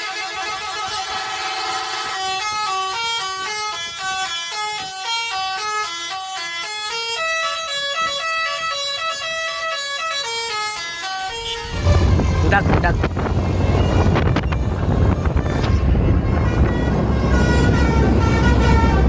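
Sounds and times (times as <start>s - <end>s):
melody horn playing a quick tune: 10.0s - 19.0s.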